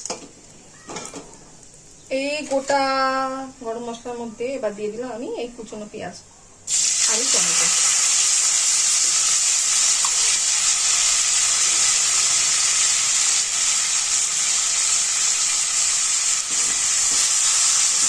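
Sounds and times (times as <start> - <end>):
onion and tomato sizzling in oil: 6.7 - 18.0.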